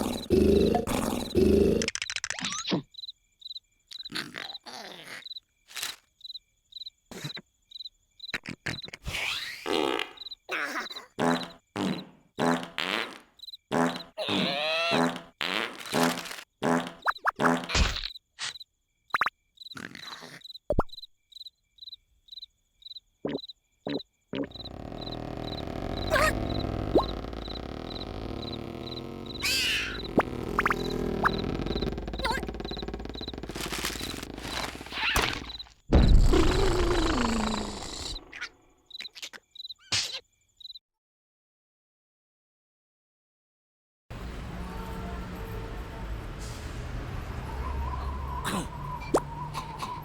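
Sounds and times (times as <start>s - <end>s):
cartoon grunts: 0.0s - 1.9s, 14.2s - 15.2s, 26.0s - 26.6s
cartoon snore: 0.0s - 1.9s, 13.7s - 17.7s, 24.4s - 35.6s, 36.2s - 38.3s
comic noises: 0.0s - 2.8s, 23.3s - 38.5s
crickets chirping: 0.0s - 12.7s, 13.3s - 14.6s, 17.0s - 40.8s, 44.2s - 50.0s
rustles: 24.5s - 35.7s.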